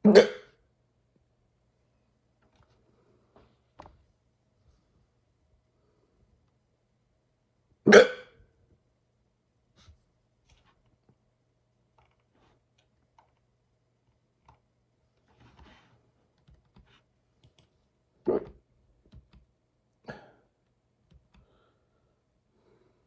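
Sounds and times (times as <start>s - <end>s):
person hiccuping: 0.0s - 0.6s, 7.9s - 8.4s, 18.3s - 18.6s.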